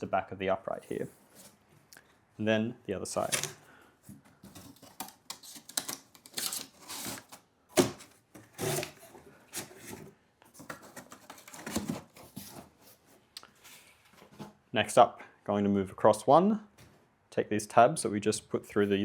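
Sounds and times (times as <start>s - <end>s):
cardboard scraping and rustling: 3.2s - 14.6s.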